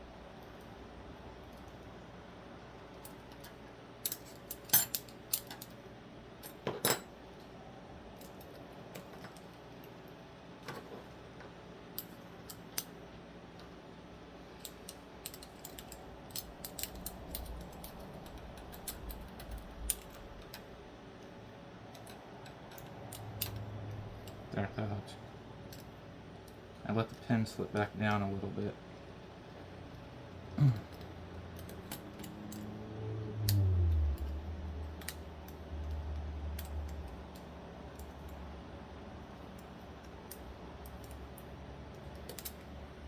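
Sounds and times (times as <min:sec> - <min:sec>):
metallic clicks of knife parts: 0:14.6 - 0:20.6, 0:33.4 - 0:38.4, 0:40.3 - 0:42.7.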